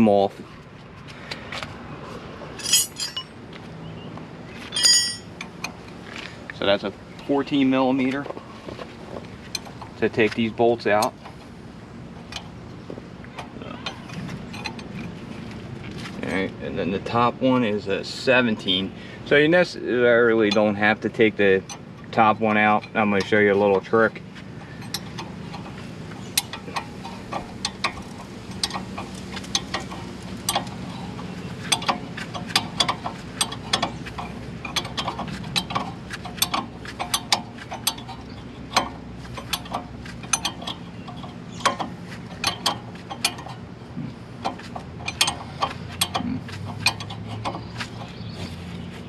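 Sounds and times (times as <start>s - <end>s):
light metallic clinks: 2.6s - 3.4s, 4.7s - 5.8s
socket ratchet clicking: 44.4s - 48.2s.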